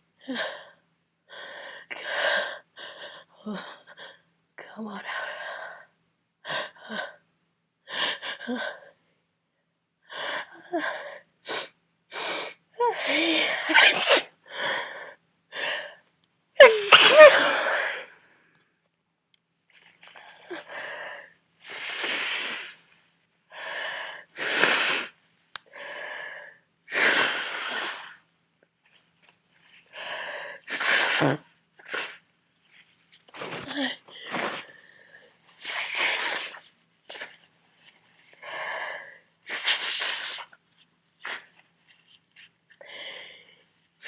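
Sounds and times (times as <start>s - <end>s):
man sneezing: 16.6s - 17.7s
gasping wheezy in-breaths: 16.6s - 18.2s.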